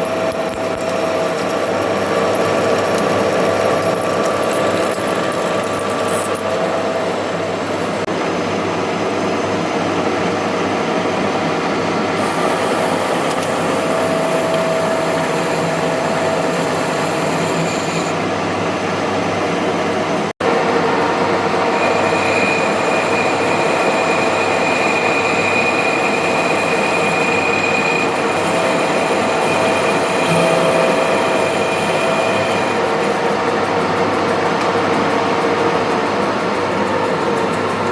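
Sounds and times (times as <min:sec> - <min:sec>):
high metallic squeal: 0:00.0 - 0:07.9, 0:12.2 - 0:18.4, 0:21.7 - 0:33.3
metal lathe running: 0:00.0 - 0:08.1, 0:12.1 - 0:37.9.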